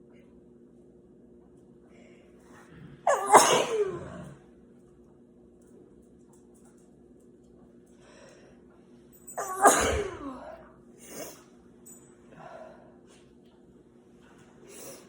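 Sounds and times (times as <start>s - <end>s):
person sneezing: 3.1s - 4.3s, 9.4s - 11.4s.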